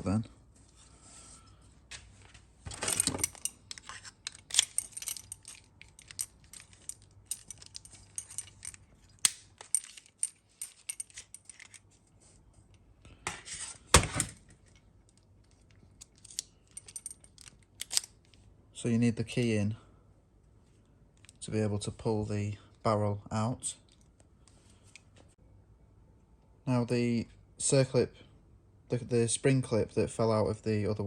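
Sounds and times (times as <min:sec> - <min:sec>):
rattling clatters: 0:02.7 - 0:11.8
small metal clicks and clinks: 0:02.8 - 0:11.8, 0:14.6 - 0:18.2.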